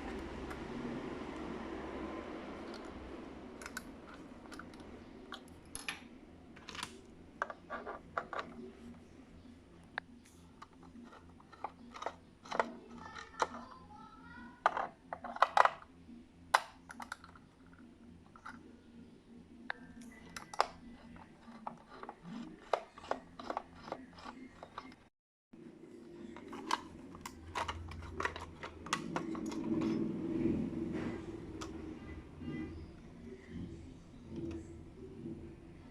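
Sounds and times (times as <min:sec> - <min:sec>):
clicks of plastic and metal parts: 0:26.4 - 0:30.0.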